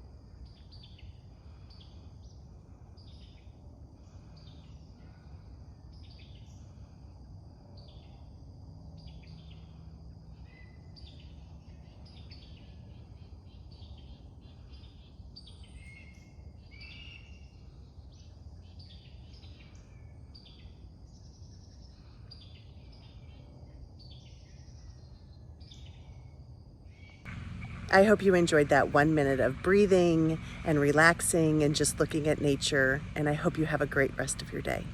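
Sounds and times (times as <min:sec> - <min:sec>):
low rumble: 0:27.3 - 0:34.9.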